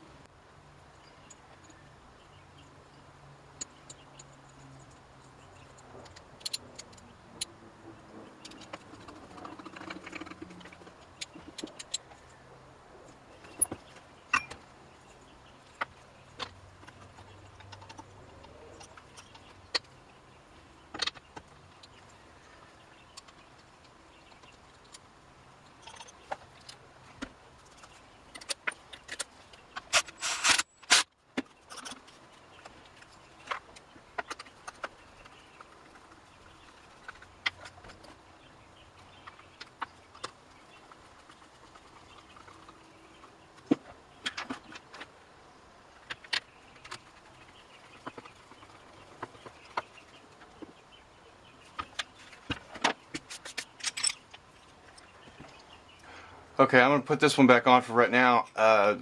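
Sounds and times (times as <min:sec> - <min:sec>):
small metal parts clattering: 0:27.6 - 0:31.0, 0:51.8 - 0:55.4.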